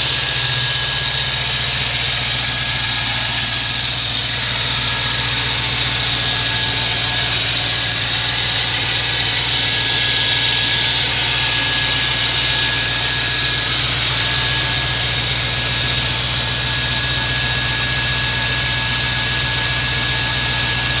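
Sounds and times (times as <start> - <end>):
car engine idling: 0.0 - 21.0.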